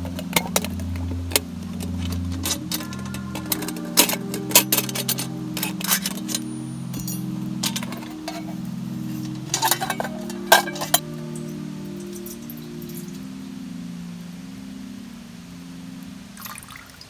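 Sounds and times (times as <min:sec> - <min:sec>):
sharp clicks and clinks: 0:00.0 - 0:13.0
slow held chords music: 0:00.0 - 0:17.0.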